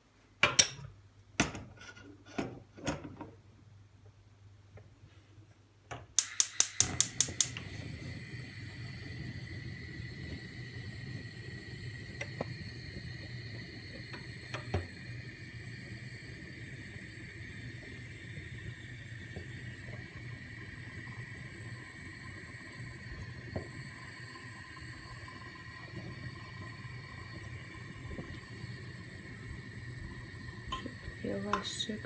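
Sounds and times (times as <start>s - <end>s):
gas stove igniter clicking: 5.9s - 9.2s, 11.9s - 15.1s
gas burner hissing: 5.9s - 32.0s.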